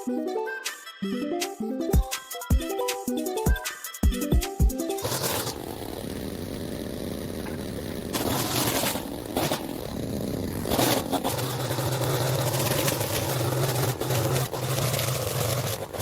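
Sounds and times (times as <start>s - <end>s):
small petrol engine running: 4.9s - 16.0s.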